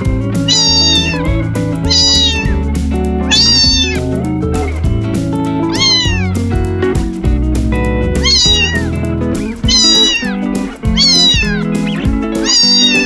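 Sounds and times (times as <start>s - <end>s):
background music: 0.0s - 13.0s
cat meowing: 0.5s - 1.2s, 1.8s - 2.5s, 3.3s - 4.0s, 5.7s - 6.4s, 8.2s - 8.9s, 9.7s - 10.4s, 11.0s - 11.6s, 12.4s - 13.0s.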